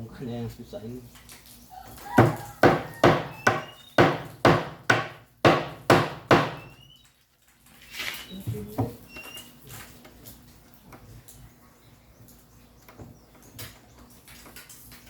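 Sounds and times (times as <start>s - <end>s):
knocks on wooden crate: 2.1s - 6.8s.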